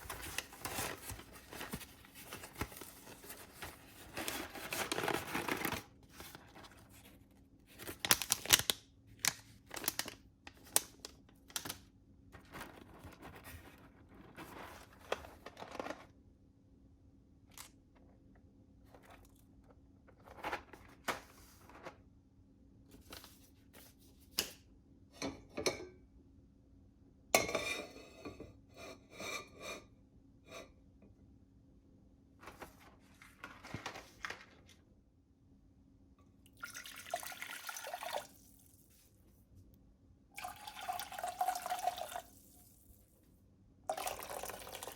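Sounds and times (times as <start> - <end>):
food packaging tearing and crinkling: 0.0 - 6.9, 7.8 - 11.8.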